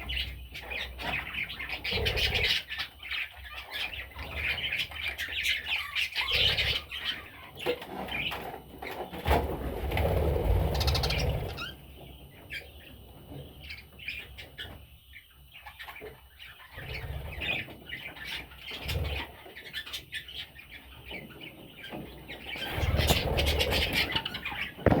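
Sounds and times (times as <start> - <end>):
budgerigars chirping: 0.0 - 9.2, 10.6 - 25.0.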